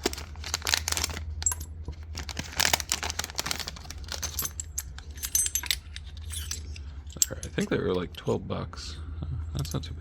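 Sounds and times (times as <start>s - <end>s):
packaging crinkling: 0.0s - 4.7s.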